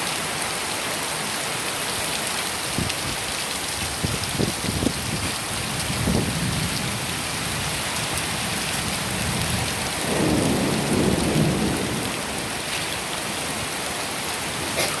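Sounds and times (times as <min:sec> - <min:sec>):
steady rain falling: 0:00.0 - 0:15.0
low roll of thunder: 0:04.2 - 0:13.1.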